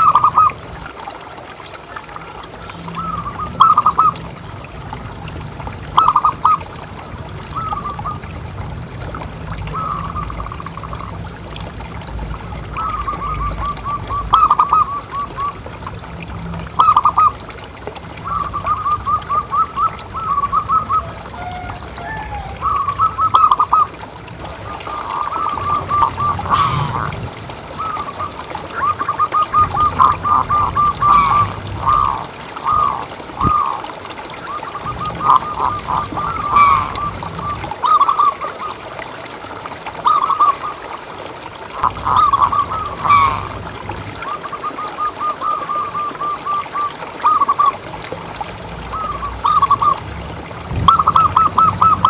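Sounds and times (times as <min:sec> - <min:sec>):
water trickling: 0:00.0 - 0:52.0
doves cooing: 0:18.3 - 0:38.8, 0:41.8 - 0:47.8, 0:50.7 - 0:52.0.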